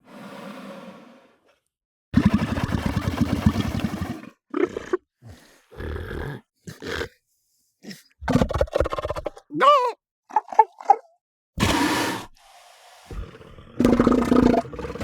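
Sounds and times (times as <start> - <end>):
seal breathy exhale: 0.0 - 8.2, 11.6 - 15.0.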